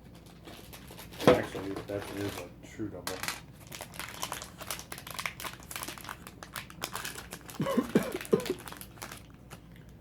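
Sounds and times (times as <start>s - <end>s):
foil wrappers crinkling: 0.0s - 9.8s.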